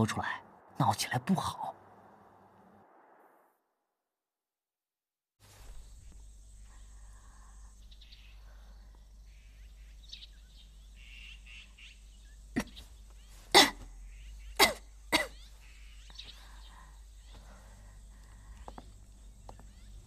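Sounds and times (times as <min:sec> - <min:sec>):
birds chirping faintly: 0:00.0 - 0:03.5, 0:05.4 - 0:20.0
woman coughing: 0:13.5 - 0:13.9, 0:14.6 - 0:15.4.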